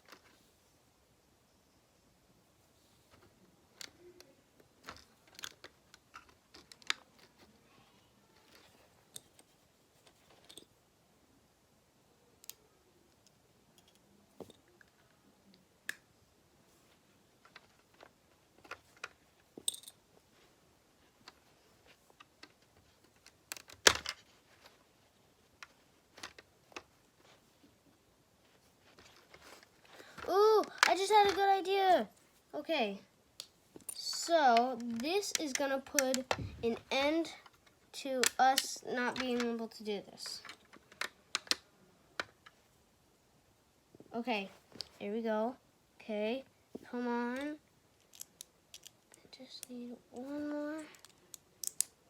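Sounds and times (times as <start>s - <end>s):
plastic bricks clicking: 3.7s - 7.4s, 34.7s - 36.4s, 40.4s - 41.6s, 48.0s - 49.2s, 50.8s - 52.0s.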